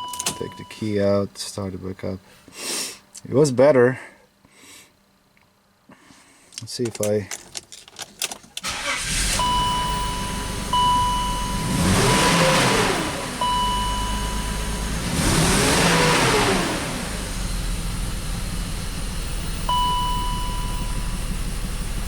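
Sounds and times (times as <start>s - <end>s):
misfiring engine revving: 8.7s - 19.7s
high electronic beep: 9.4s - 12.7s, 13.4s - 14.9s, 19.7s - 21.2s.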